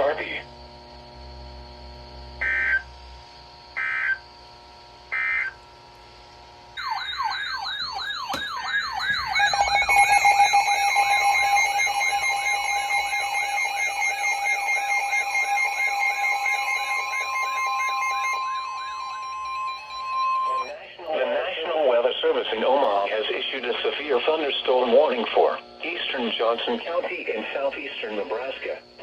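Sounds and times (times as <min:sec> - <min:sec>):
warbling alert tone: 0:06.8 - 0:13.1
two-tone attention signal: 0:06.8 - 0:20.8
two-tone data squawks: 0:06.8 - 0:21.0.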